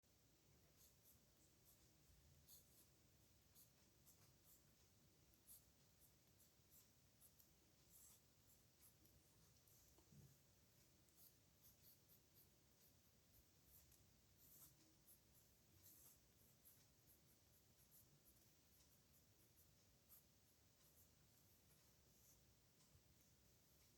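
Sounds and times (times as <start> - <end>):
pen scratching on paper: 0.8 - 10.3, 11.1 - 22.4.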